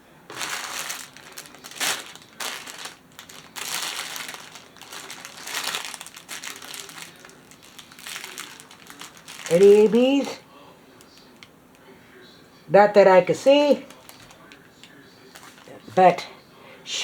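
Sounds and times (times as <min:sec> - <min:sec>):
plastic packaging crinkling: 0:00.3 - 0:10.4, 0:13.7 - 0:16.0.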